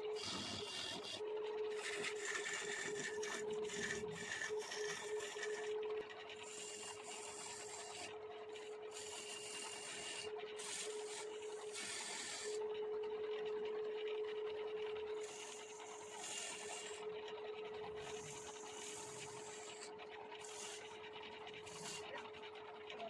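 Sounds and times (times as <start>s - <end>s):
tool scraping spinning wood: 0.0s - 12.6s, 15.2s - 17.0s, 17.9s - 21.0s, 21.6s - 22.2s
wood lathe humming: 0.0s - 12.6s, 15.0s - 17.1s, 17.8s - 22.2s.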